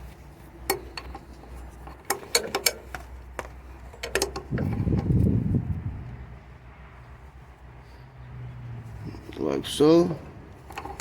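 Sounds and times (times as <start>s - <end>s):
low rumbling: 3.6s - 9.3s.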